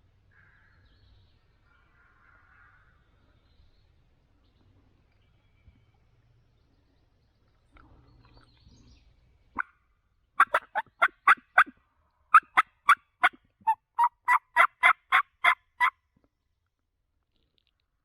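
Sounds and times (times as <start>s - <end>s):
turkey yelps: 10.4s - 11.7s, 12.3s - 15.9s.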